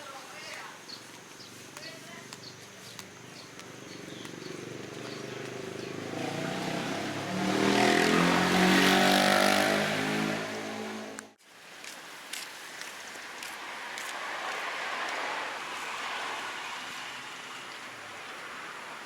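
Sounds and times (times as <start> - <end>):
vehicle engine passing: 3.3 - 11.4.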